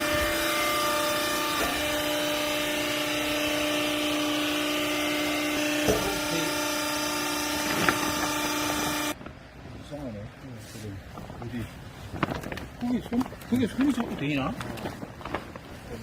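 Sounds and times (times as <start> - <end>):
hydraulic pump whine: 0.0 - 9.2
mechanical hum: 0.0 - 16.0.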